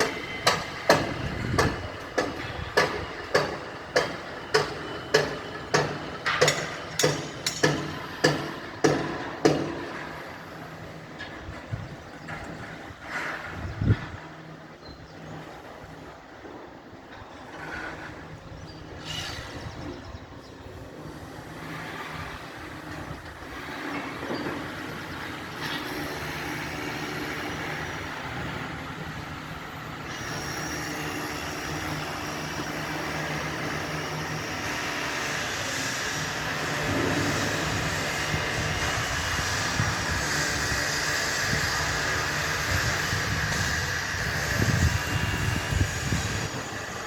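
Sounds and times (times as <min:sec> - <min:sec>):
heavy engine running: 0:20.8 - 0:47.0.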